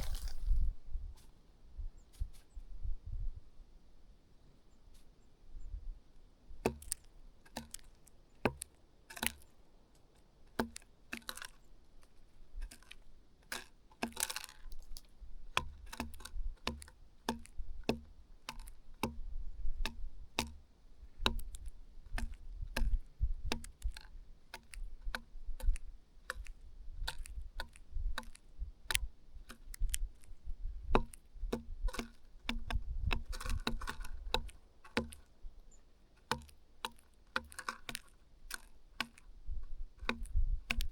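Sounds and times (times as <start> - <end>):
wings fluttering: 0.0 - 1.3
beaks tapping on food: 6.6 - 9.6, 10.5 - 40.9.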